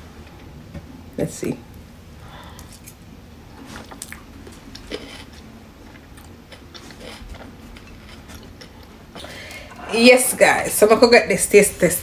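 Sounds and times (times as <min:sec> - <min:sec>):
quiet chewing: 0:02.2 - 0:09.8.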